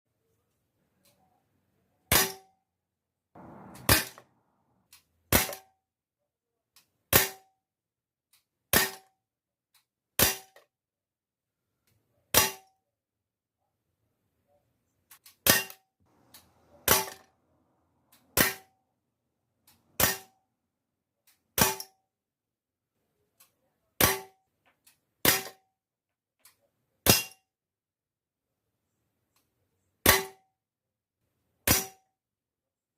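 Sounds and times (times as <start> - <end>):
airsoft pistol shots: 3.4 - 4.4.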